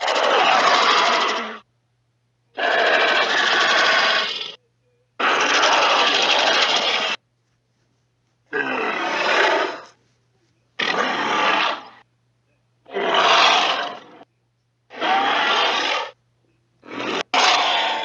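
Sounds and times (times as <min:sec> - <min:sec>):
harsh dinosaur roars: 0:00.0 - 0:01.6, 0:02.6 - 0:04.6, 0:05.2 - 0:07.2, 0:08.5 - 0:09.9, 0:10.8 - 0:12.0, 0:12.9 - 0:14.2, 0:14.9 - 0:16.2, 0:16.8 - 0:18.0.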